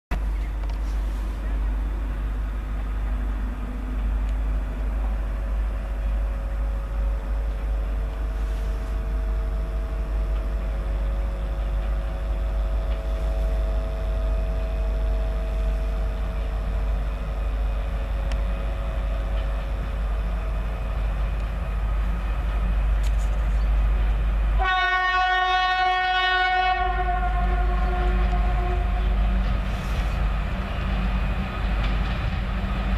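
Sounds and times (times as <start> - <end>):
freight train rumbling: 0.1 - 32.9
locomotive horn blast: 24.6 - 29.2.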